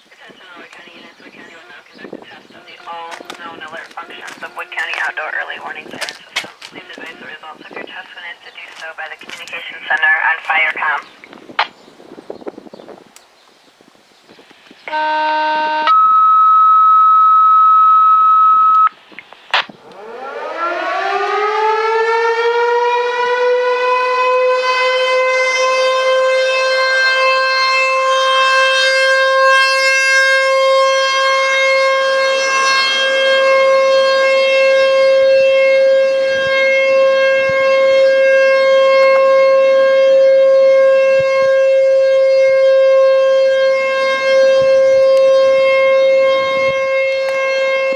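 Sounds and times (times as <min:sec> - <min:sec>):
radio alert tones: 0:00.1 - 0:11.2
mechanical warning siren wailing: 0:14.8 - 0:18.9, 0:19.7 - 0:47.9.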